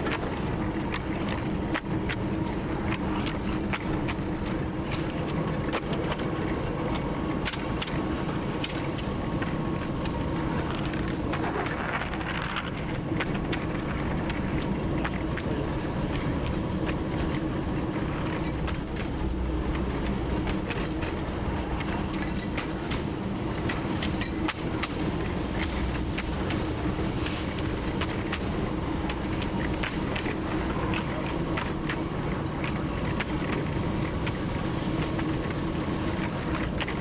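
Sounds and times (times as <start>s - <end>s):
diesel locomotive engine drone: 0.0s - 37.0s
wheels clicking on track: 0.0s - 37.0s.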